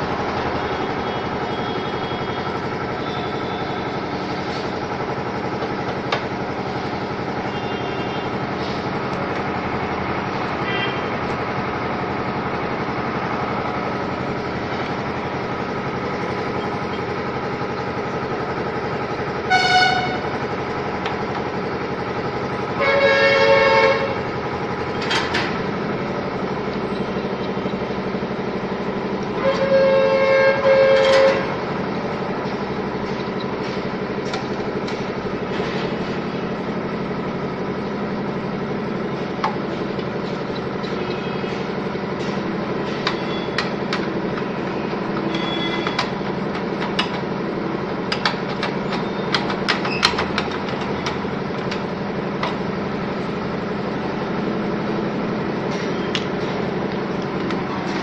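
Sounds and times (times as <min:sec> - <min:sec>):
mechanical hum: 0:00.0 - 0:58.0
horn honks: 0:00.6 - 0:04.0, 0:07.4 - 0:08.8, 0:10.5 - 0:11.2, 0:19.3 - 0:20.4, 0:22.6 - 0:24.3, 0:29.2 - 0:31.7, 0:40.8 - 0:41.8, 0:44.5 - 0:46.1.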